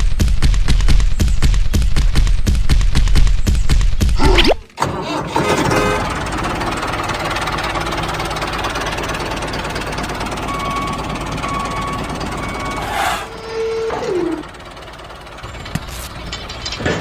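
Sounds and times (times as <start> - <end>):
small engine chugging: 4.8 - 17.0.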